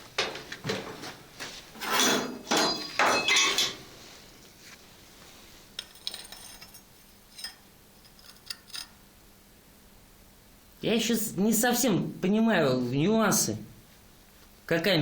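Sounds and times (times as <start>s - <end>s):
small metal pieces clinking: 5.8s - 9.0s.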